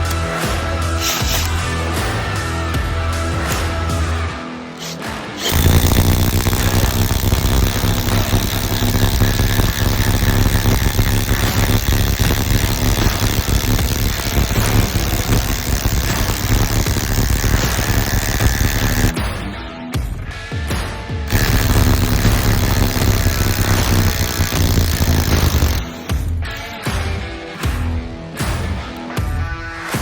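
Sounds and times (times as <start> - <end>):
impact driver hammering screw: 1.0 - 1.5, 4.8 - 19.2, 21.3 - 26.7.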